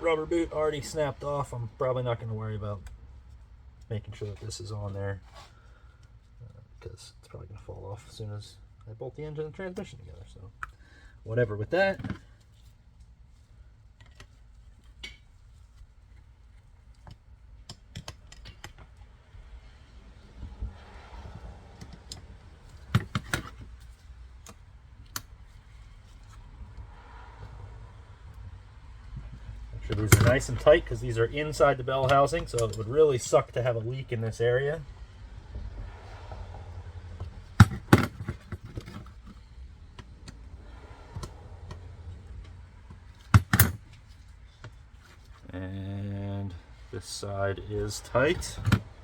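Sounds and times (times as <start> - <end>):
tools clicking and knocking: 16.9 - 19.0, 21.8 - 23.7, 29.2 - 30.6, 32.0 - 32.9, 37.2 - 39.4, 42.4 - 44.0
wrench and metal parts clinking: 29.9 - 30.7, 32.0 - 33.4, 43.3 - 43.8.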